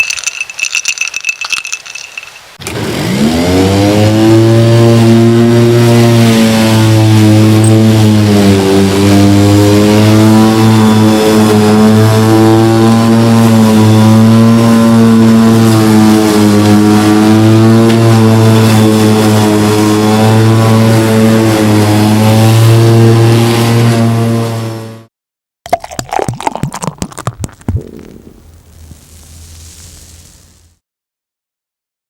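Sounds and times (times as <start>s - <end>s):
lawn mower engine running: 0.0s - 25.0s.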